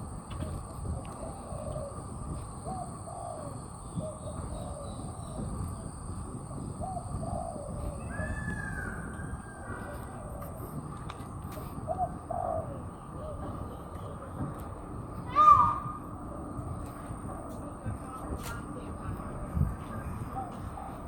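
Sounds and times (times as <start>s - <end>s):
steady background noise: 0.0s - 21.0s.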